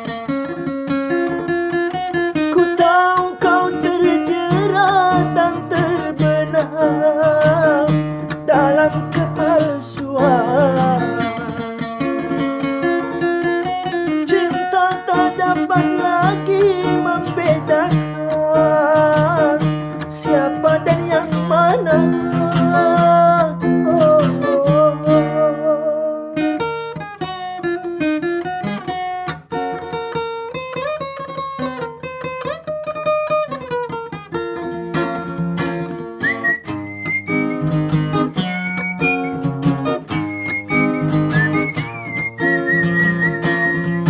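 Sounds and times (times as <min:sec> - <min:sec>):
acoustic guitar playing: 0:00.0 - 0:44.0
person singing with vibrato: 0:02.4 - 0:11.7, 0:14.1 - 0:26.5.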